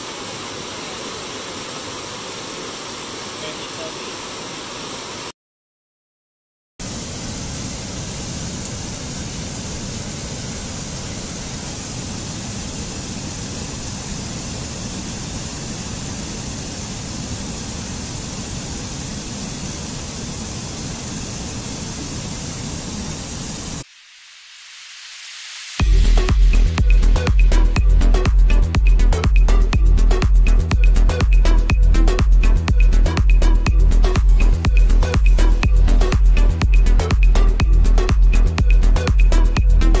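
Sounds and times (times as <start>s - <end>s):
waterfall rushing: 0.0s - 5.3s.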